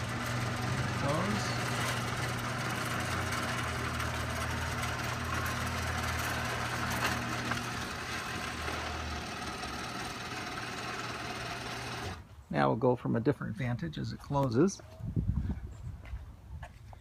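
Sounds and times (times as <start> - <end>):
garage door opener motor hum: 0.0 - 12.2.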